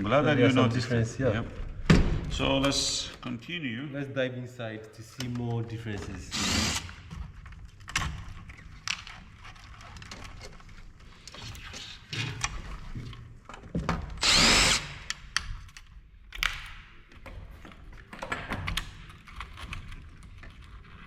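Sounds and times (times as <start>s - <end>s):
power drill spinning: 6.2s - 7.0s, 14.2s - 15.2s.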